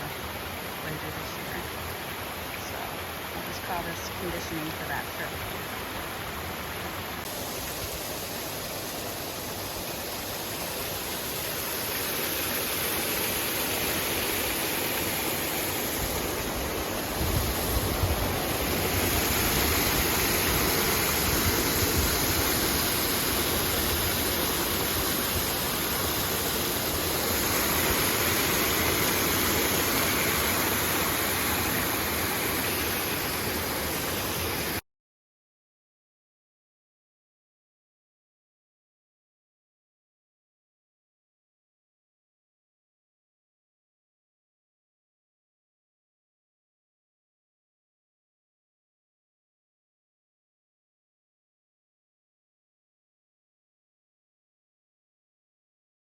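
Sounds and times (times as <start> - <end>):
water running and splashing: 0.2 - 34.8.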